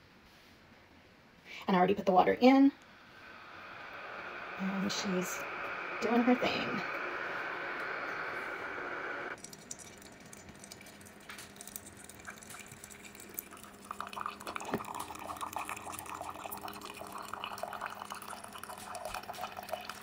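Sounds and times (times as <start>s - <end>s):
faint steady hum: 0.0s - 20.0s
coffee dripping into mug: 9.4s - 20.0s.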